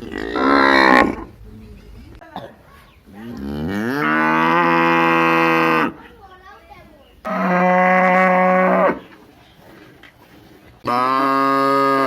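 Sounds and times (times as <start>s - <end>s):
cow mooing: 0.0s - 1.3s, 3.4s - 6.0s, 7.2s - 9.1s, 10.8s - 12.0s.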